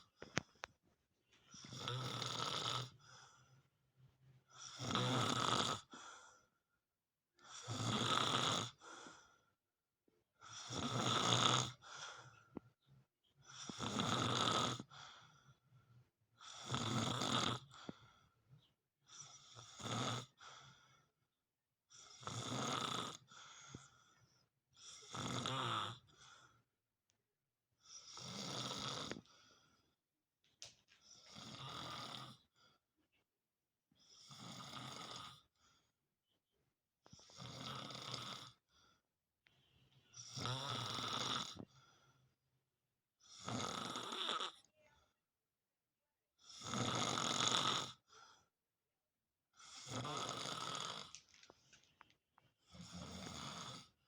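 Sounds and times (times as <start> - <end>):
person snoring: 1.6 - 2.9, 4.6 - 5.9, 7.4 - 8.8, 10.5 - 11.8, 13.6 - 14.9, 16.4 - 17.7, 24.9 - 26.2, 28.0 - 29.2, 31.2 - 32.4, 34.1 - 35.5, 37.2 - 38.6, 40.2 - 41.6, 43.2 - 44.7, 46.4 - 48.0, 49.6 - 51.2, 52.7 - 53.9.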